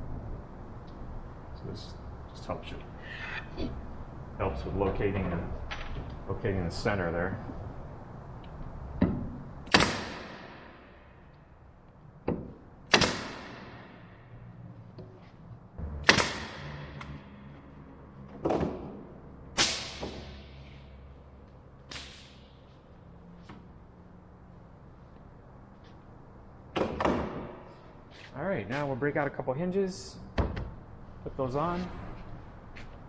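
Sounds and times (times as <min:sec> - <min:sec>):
pneumatic nailer firing: 0:09.6 - 0:11.1, 0:12.9 - 0:14.2, 0:16.0 - 0:17.3, 0:19.6 - 0:20.6, 0:21.9 - 0:22.5, 0:26.8 - 0:27.7.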